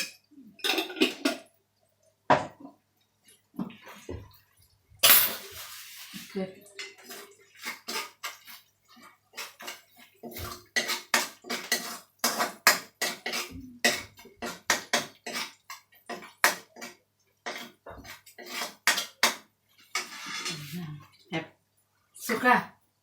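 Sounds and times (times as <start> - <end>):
utensil clinking and scraping pot: 0.0 - 1.5, 5.0 - 21.3.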